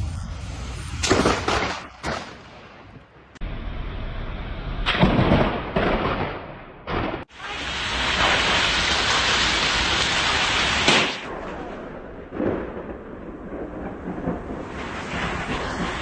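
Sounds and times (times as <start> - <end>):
thunder cracking and rumbling: 0.9 - 16.0
heavy rain: 7.2 - 16.0.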